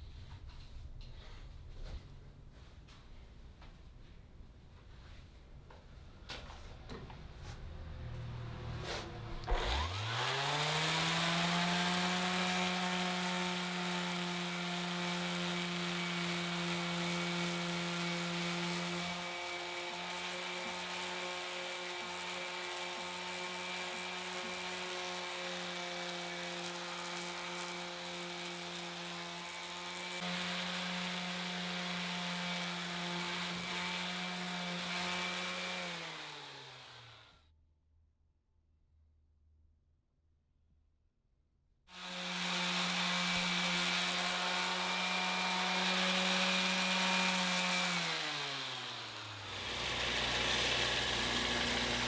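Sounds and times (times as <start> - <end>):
power tool motor whining: 9.1 - 37.3, 42.0 - 52.0.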